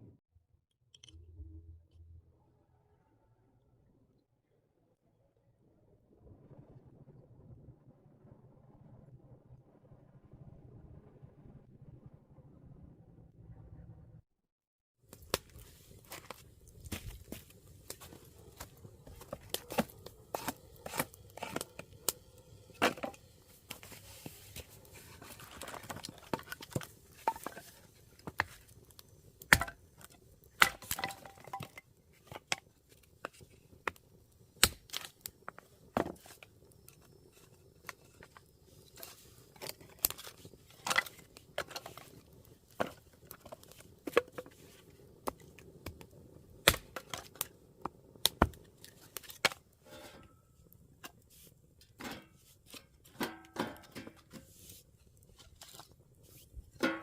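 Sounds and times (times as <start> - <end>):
clicks and knocks of objects handled: 17.0 - 28.8, 34.6 - 50.4, 51.0 - 57.0.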